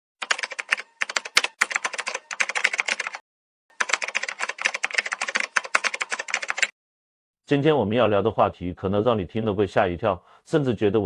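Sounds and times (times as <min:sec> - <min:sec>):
rapid typing on a keyboard: 0:00.2 - 0:03.2, 0:03.8 - 0:06.8.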